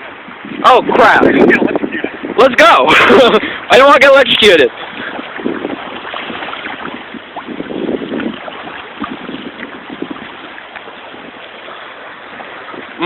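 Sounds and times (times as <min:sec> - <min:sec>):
wind buffeting microphone: 0:00.0 - 0:13.0
floodwater sloshing: 0:02.6 - 0:13.0
splashes or knocks: 0:04.8 - 0:13.0.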